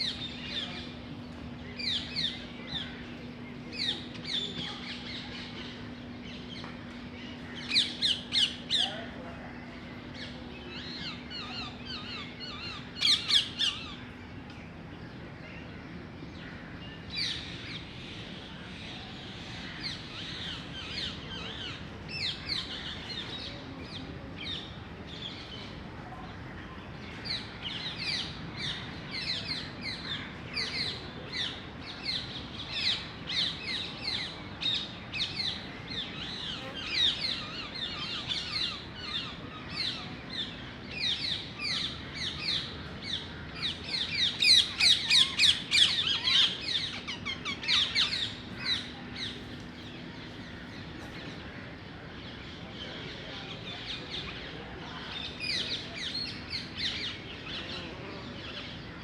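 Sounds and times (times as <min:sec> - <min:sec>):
birds chirping and squawking: 0:32.1 - 0:49.4.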